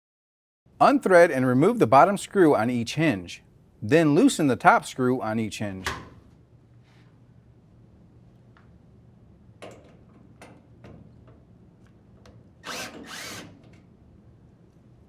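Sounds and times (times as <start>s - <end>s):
drill driver whirring: 12.6s - 13.6s.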